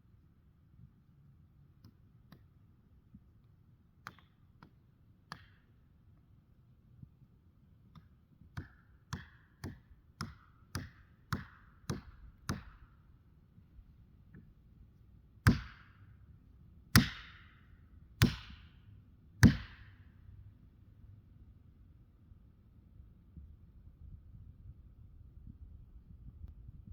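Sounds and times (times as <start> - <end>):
axe blows striking wood: 15.5 - 15.9, 17.0 - 17.5, 18.2 - 18.6, 19.4 - 19.9.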